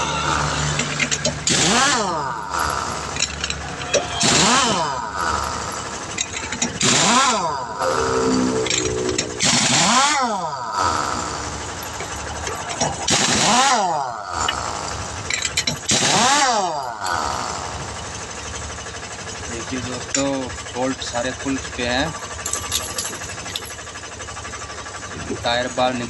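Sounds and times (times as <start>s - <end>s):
pneumatic impact wrench: 0.7s - 17.9s.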